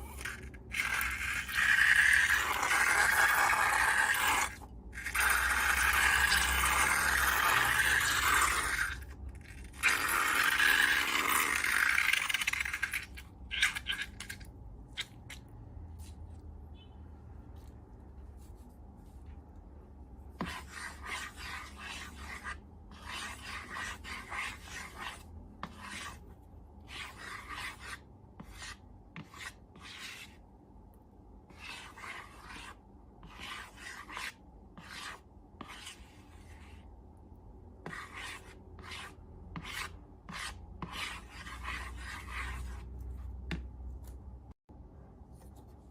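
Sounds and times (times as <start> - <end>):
slime scraping and rubbing: 0.0 - 15.3.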